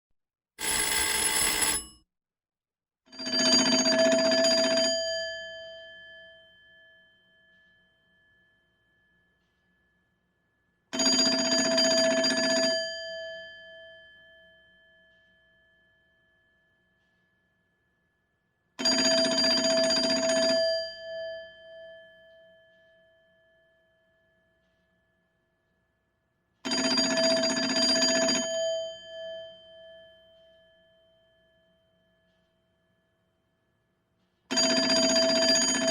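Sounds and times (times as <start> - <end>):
old telephone bell ringing: 0.6 - 1.9, 11.0 - 13.0, 34.6 - 35.9.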